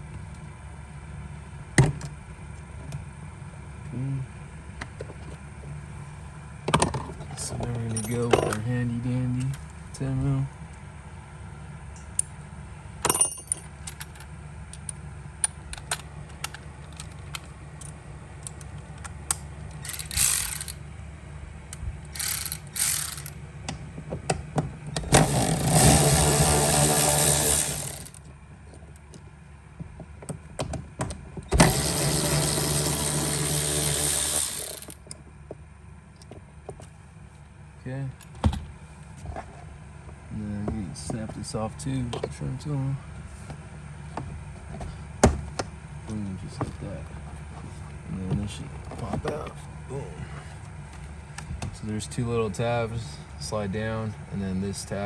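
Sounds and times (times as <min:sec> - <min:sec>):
tool clicks: 0:18.5 - 0:20.8, 0:22.2 - 0:23.4, 0:31.5 - 0:35.0
power ratchet motor running: 0:19.8 - 0:20.8, 0:22.1 - 0:23.4, 0:25.0 - 0:28.2, 0:31.5 - 0:35.0.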